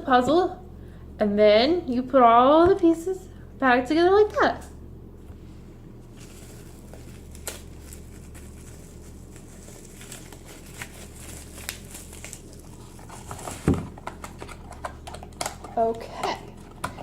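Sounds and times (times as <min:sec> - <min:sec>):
packaging crinkling and rustling: 0:06.0 - 0:17.0.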